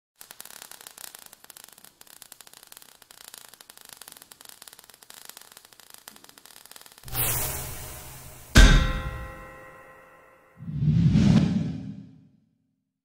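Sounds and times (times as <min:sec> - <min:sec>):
faint crackling static: 0:00.2 - 0:07.2.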